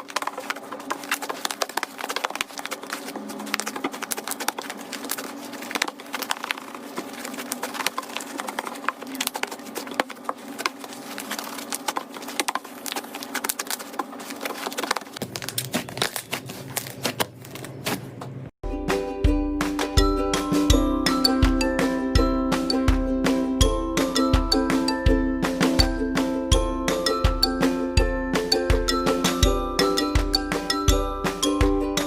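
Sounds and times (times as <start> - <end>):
slime crackling and popping: 0.0 - 17.9.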